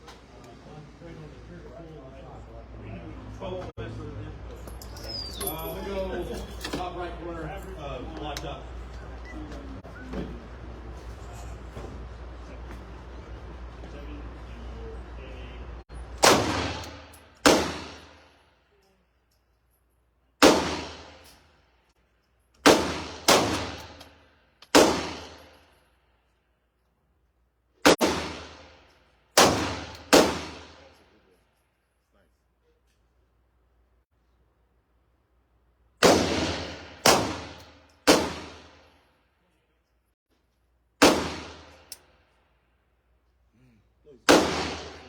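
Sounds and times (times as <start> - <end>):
echoing handgun shots: 16.2 - 18.2, 20.4 - 21.2, 22.6 - 24.0, 24.7 - 25.5, 27.9 - 28.7, 29.4 - 30.9, 36.0 - 38.8, 41.0 - 41.9, 44.3 - 45.0
gunshots: 16.2 - 18.2, 20.4 - 21.2, 22.6 - 24.0, 24.7 - 25.5, 27.8 - 28.8, 29.4 - 30.9, 36.0 - 38.8, 41.0 - 41.9, 44.3 - 45.0.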